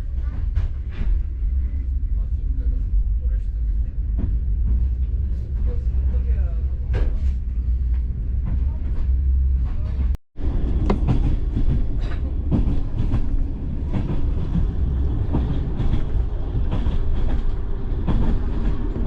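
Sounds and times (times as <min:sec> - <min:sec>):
train low rumble: 0:00.0 - 0:19.0
wheels knocking and clicking: 0:10.6 - 0:19.0.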